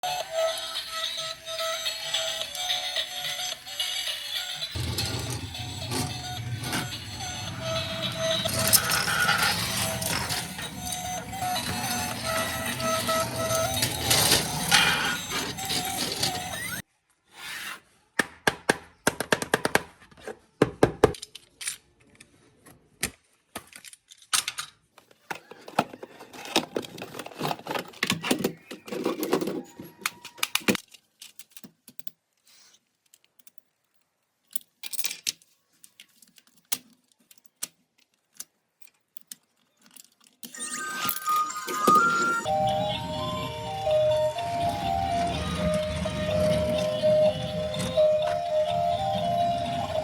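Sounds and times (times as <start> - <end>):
plastic toy parts clicking: 21.1 - 22.4, 23.0 - 40.6.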